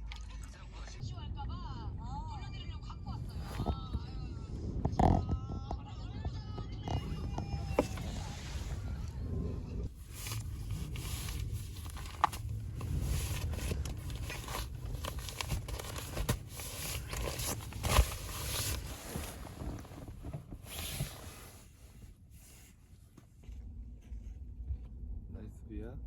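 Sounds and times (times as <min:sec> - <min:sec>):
low steady rumble: 0:00.0 - 0:26.0
plastic packaging crinkling: 0:10.0 - 0:20.1.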